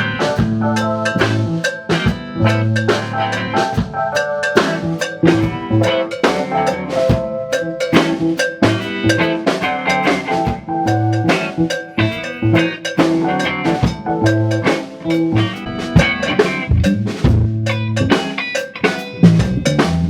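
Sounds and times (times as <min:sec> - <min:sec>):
bass and guitar notes: 0:00.0 - 0:20.0
rock drum beat: 0:00.0 - 0:20.0.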